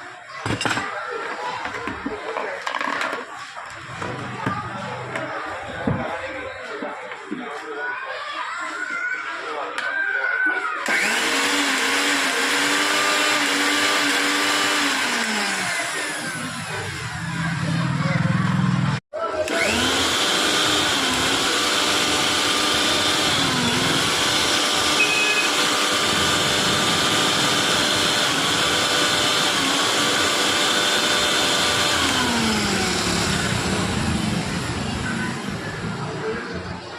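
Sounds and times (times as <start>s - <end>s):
mixer grinder motor whining: 10.8s - 36.2s.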